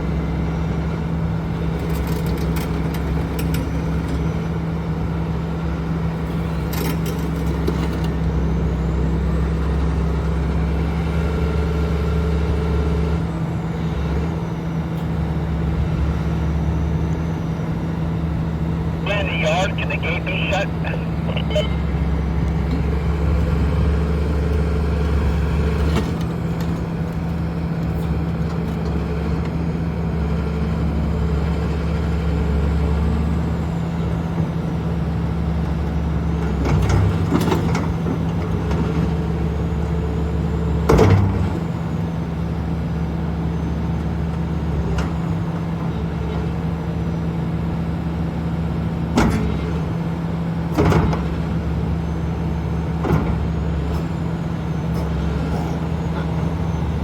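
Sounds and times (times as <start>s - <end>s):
excavator diesel engine running: 0.1s - 30.3s.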